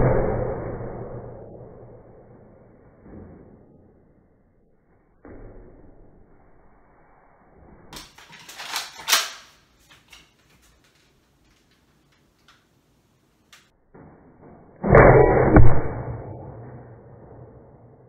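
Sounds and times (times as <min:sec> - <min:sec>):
foam dart blaster firing: 0:14.8 - 0:17.9.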